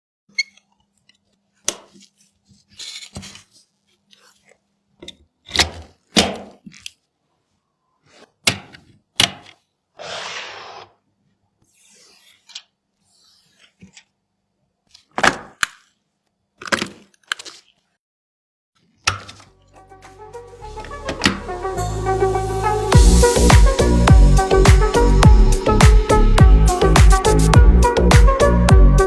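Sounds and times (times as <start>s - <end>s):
rustling scrape: 10.0s - 11.0s, 11.6s - 14.0s
music: 19.5s - 29.0s.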